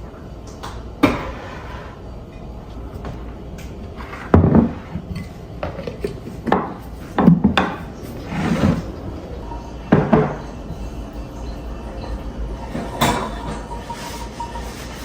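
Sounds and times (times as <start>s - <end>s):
scrape of dishes: 1.2s - 2.0s, 4.0s - 8.9s, 12.7s - 15.0s
dishes and pots clattering: 4.0s - 15.0s.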